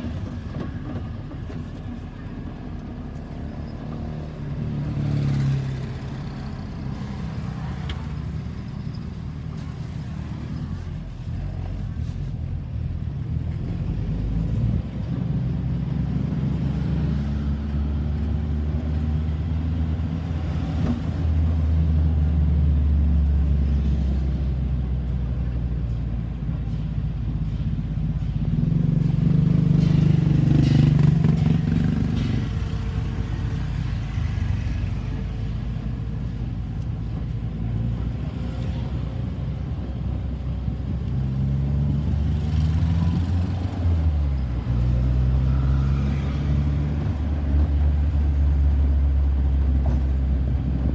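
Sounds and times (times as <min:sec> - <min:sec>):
loud vehicle engine: 0:00.0 - 0:50.9
low traffic rumble: 0:00.0 - 0:50.9
vehicle engines passing: 0:00.0 - 0:50.9.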